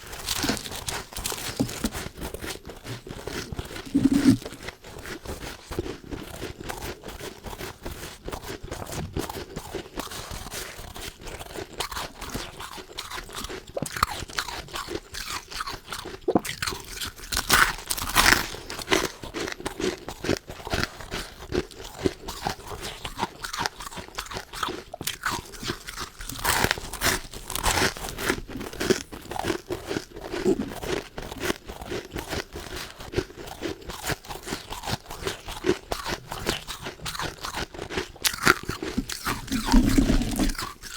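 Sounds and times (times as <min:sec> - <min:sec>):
mouth crunching frost: 0:00.1 - 0:07.5, 0:30.2 - 0:30.8, 0:36.3 - 0:40.9.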